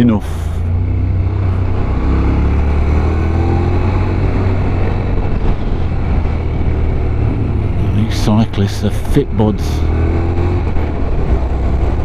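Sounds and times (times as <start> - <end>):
wind noise on microphone: 1.1 - 8.2.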